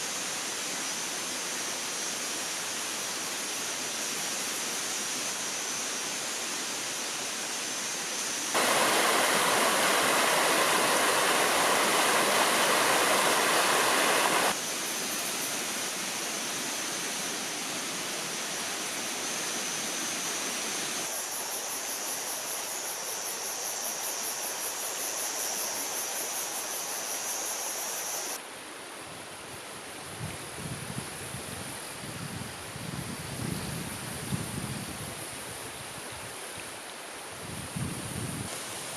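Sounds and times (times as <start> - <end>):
stream flowing and splashing: 8.4 - 22.6, 34.0 - 38.9.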